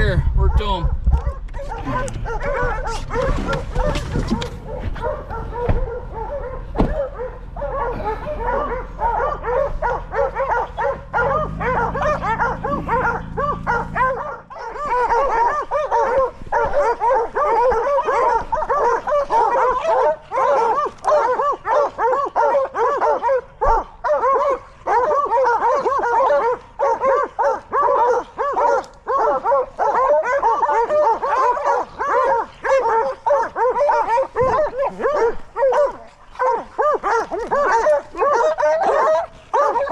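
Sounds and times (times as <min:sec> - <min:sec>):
hounds baying: 0:00.4 - 0:39.9
vehicle engine idling: 0:04.6 - 0:16.4.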